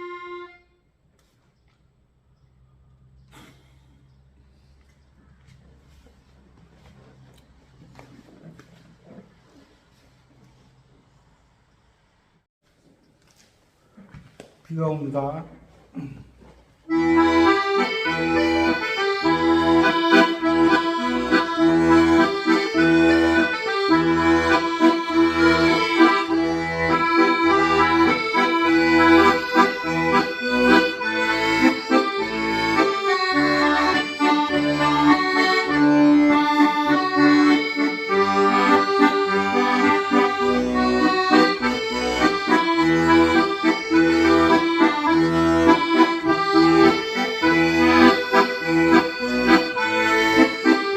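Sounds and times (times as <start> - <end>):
accordion playing: 0.0 - 1.0, 16.9 - 50.9.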